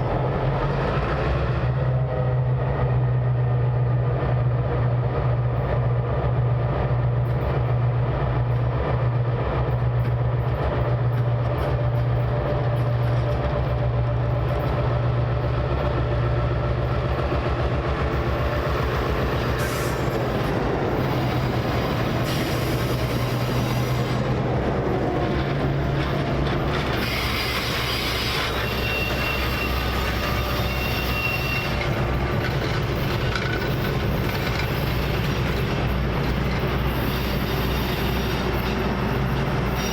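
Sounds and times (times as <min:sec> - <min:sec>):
diesel train drone: 0:00.0 - 0:39.9
high wheel squeal: 0:18.3 - 0:39.9
wheels clicking over rail joints: 0:31.7 - 0:39.9.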